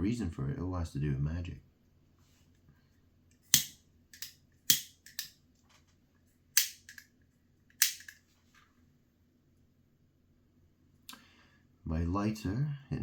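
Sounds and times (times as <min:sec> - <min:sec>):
lighter striking: 0:03.5 - 0:05.3, 0:06.6 - 0:07.0, 0:07.8 - 0:08.2
small lighter clicks: 0:03.5 - 0:05.3, 0:06.6 - 0:07.0, 0:07.8 - 0:08.2.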